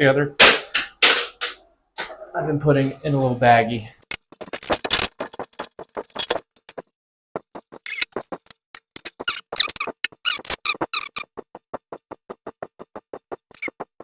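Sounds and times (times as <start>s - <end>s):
rubbery squeaks: 4.2s - 6.8s, 7.4s - 14.0s.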